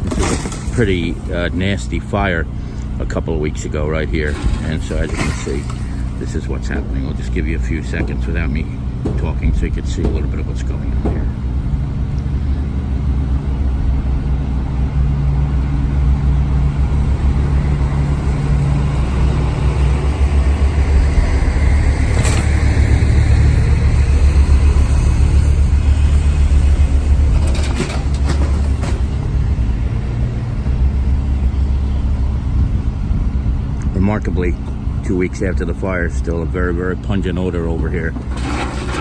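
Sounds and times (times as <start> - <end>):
large engine rumbling: 0.0 - 39.0
sharp knocks and clatter: 4.3 - 11.4.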